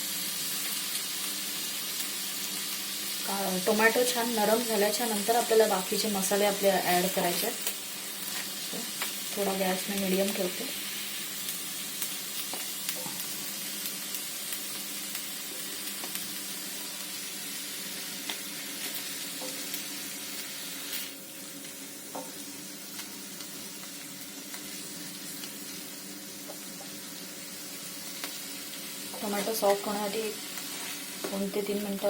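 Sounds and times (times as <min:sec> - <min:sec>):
vegetables sizzling in hot oil: 0:00.0 - 0:32.0.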